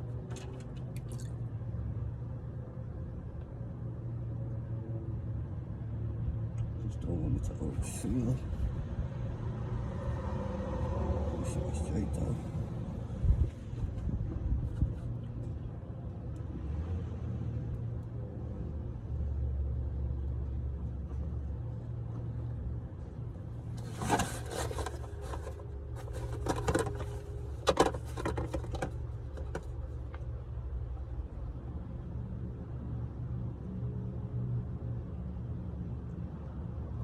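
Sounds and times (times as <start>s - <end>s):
low mechanical hum: 0.0s - 37.0s
clattering and scraping: 23.6s - 30.2s.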